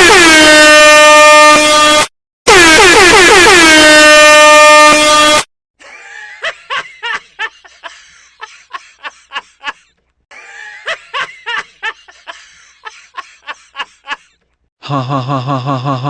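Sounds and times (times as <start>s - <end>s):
snickering laugh: 5.8s - 16.0s.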